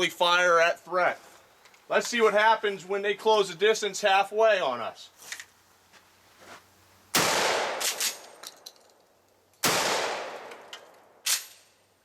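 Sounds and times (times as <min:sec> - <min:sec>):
shotgun blasts with echo: 0:07.2 - 0:08.3, 0:09.6 - 0:10.7.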